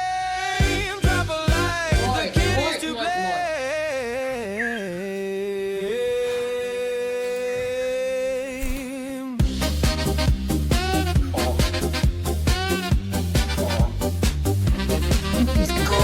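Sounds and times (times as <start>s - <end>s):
person singing with vibrato: 0.0s - 9.4s
music beat: 9.4s - 16.0s.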